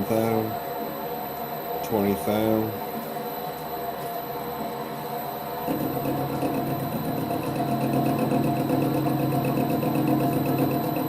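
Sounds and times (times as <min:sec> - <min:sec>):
lathe running: 0:02.8 - 0:11.0.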